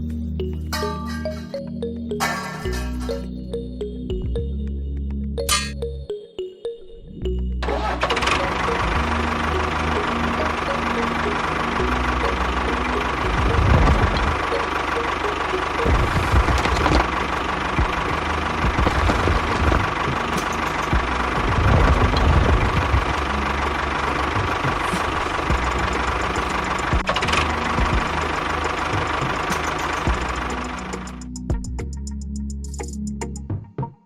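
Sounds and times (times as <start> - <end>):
engine running with high whine: 0.0 - 6.2, 6.9 - 33.4
low engine rumble: 7.2 - 31.7.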